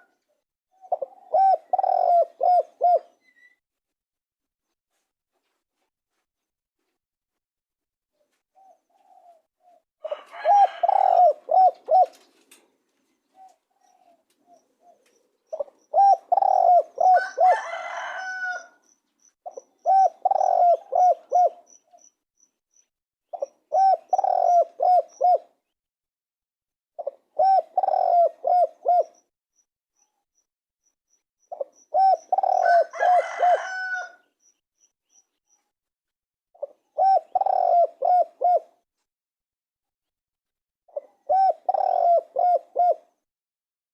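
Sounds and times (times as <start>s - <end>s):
dove cooing: 0.0s - 3.3s, 8.6s - 12.6s, 13.2s - 18.8s, 19.5s - 21.8s, 23.3s - 25.6s, 27.0s - 29.2s, 31.5s - 34.2s, 36.6s - 38.8s, 40.9s - 43.2s.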